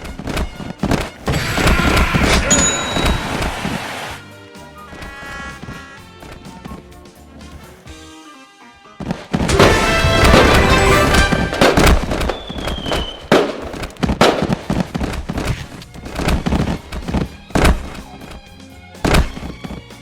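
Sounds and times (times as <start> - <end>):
loud music: 9.5 - 12.1
heavy booms and bangs: 9.5 - 15.4.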